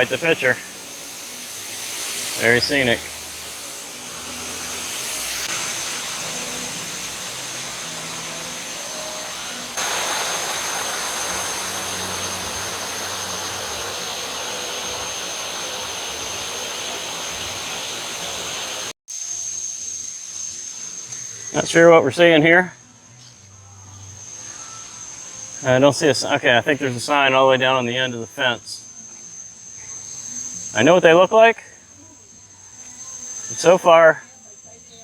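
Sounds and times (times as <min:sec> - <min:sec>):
thin high tone: 0:00.0 - 0:35.0
waterfall rushing: 0:01.6 - 0:18.9.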